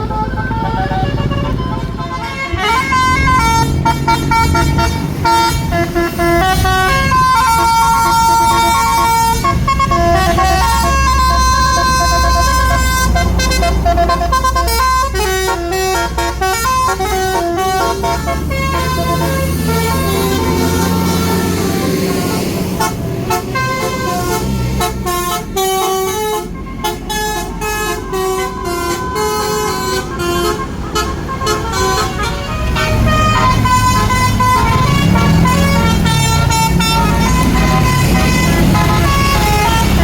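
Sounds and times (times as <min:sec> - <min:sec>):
musical bus horn tune: 0:00.0 - 0:40.0
wavering siren-like wail: 0:00.0 - 0:40.0.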